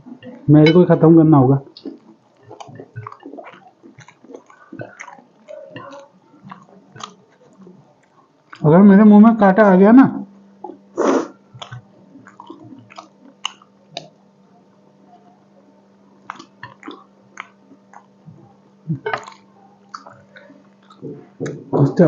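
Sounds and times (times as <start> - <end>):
faint steady hum: 0.0 - 22.0
wet chewing smacks: 1.7 - 8.7, 10.6 - 14.2, 16.2 - 21.8.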